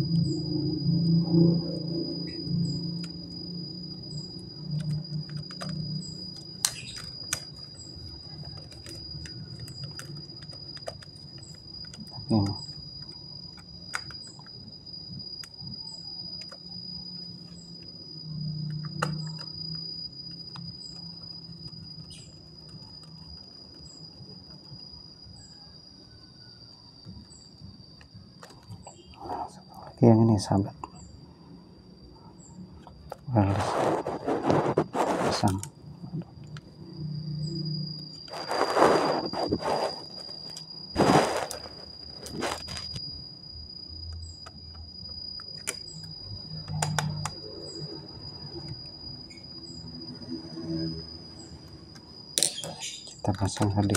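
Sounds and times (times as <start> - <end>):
steady high-pitched tone: 0.0 - 5.1
high-pitched whine: 0.0 - 27.8, 28.7 - 53.9.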